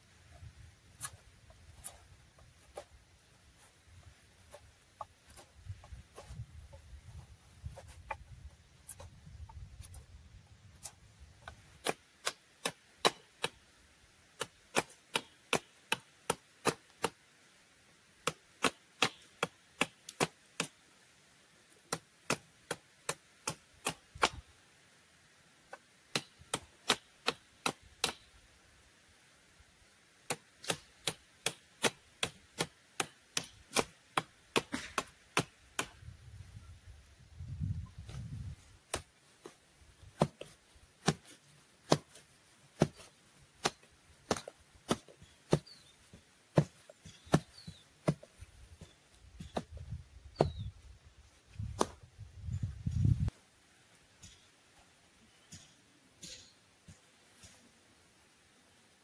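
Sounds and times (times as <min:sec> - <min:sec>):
tool chopping wood: 0:11.4 - 0:13.6, 0:14.4 - 0:17.2, 0:18.2 - 0:20.8, 0:21.8 - 0:24.5, 0:25.7 - 0:28.3, 0:30.2 - 0:36.0, 0:38.9 - 0:50.7, 0:51.6 - 0:52.0.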